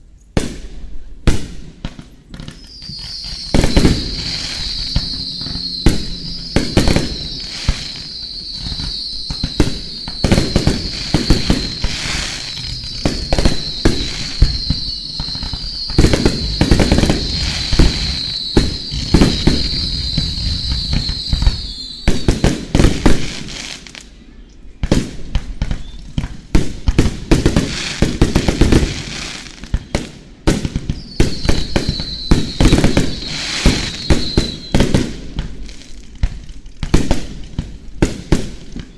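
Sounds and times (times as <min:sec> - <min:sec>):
fireworks bursts and bangs: 0:00.4 - 0:24.2, 0:24.8 - 0:38.9
steady high hiss: 0:01.7 - 0:24.4.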